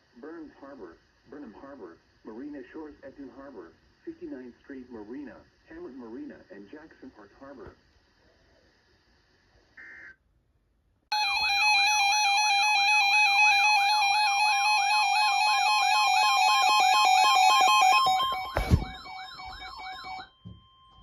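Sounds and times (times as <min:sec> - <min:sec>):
warbling electronic alarm: 0:11.1 - 0:21.0.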